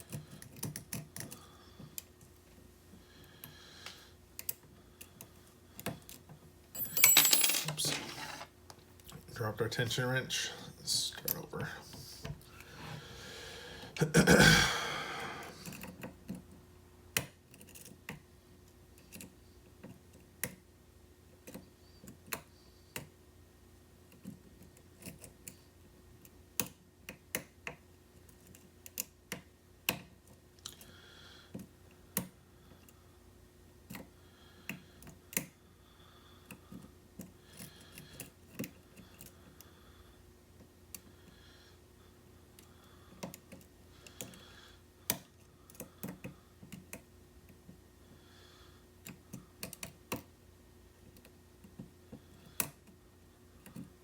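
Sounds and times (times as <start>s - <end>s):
metal clatter: 6.8s - 8.5s.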